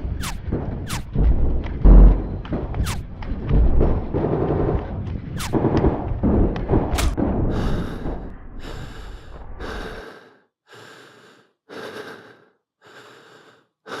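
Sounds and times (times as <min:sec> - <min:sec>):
low rumble: 0:00.0 - 0:10.0
person breathing heavily: 0:07.4 - 0:14.0.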